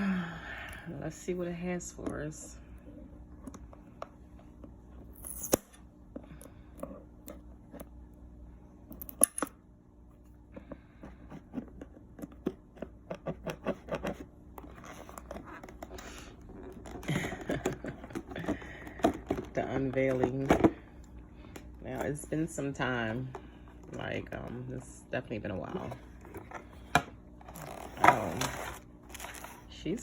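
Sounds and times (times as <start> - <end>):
packaging rustling: 27.4 - 29.7.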